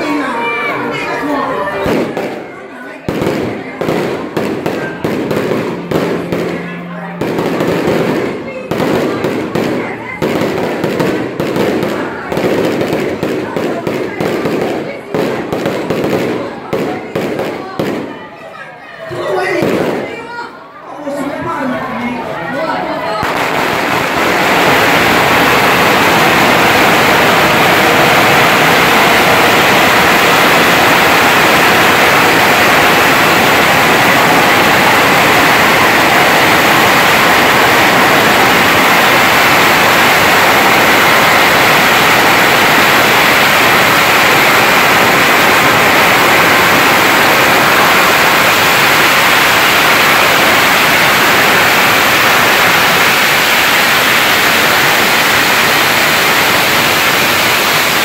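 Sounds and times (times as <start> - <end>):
firecrackers crackling: 0.0 - 20.6, 23.0 - 58.0.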